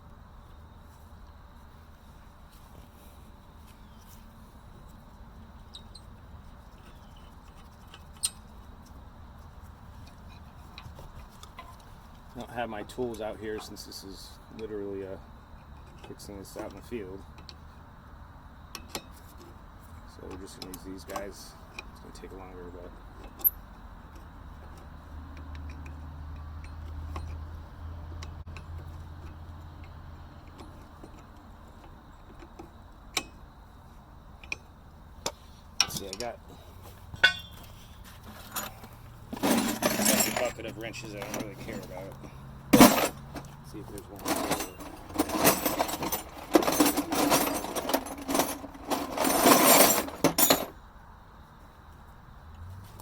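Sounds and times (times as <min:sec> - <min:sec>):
metal wrenches clattering: 0:35.8 - 0:36.3, 0:37.1 - 0:50.8.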